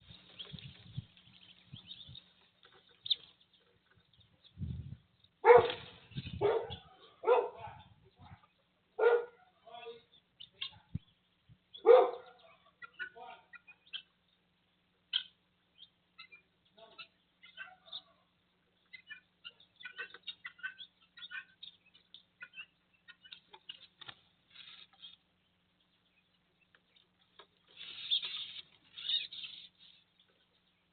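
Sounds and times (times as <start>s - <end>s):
faint high bird chirps: 0.0s - 14.4s, 15.1s - 23.9s, 25.8s - 30.9s
dog barking: 5.4s - 5.8s, 6.4s - 7.9s, 9.0s - 9.5s, 11.8s - 12.7s.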